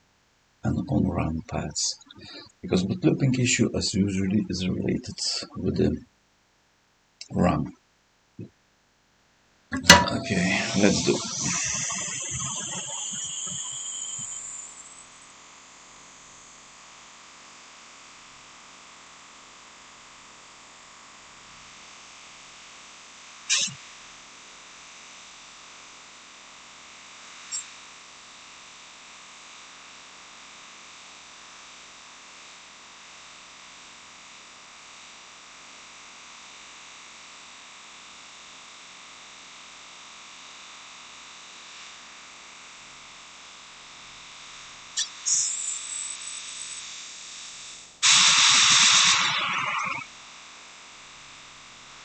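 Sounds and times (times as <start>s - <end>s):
hot-air station hissing: 9.8s - 15.5s, 23.5s - 23.8s, 45.0s - 50.1s
click: 23.5s - 23.8s.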